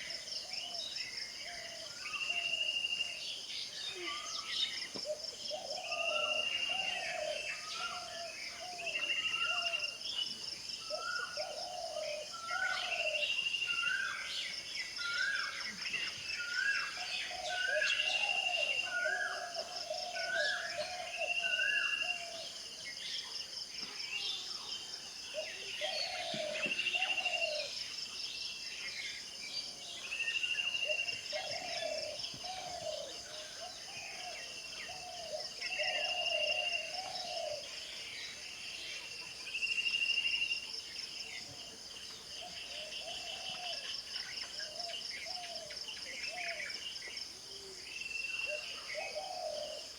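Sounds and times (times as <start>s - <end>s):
birds calling and singing: 0.0s - 49.9s.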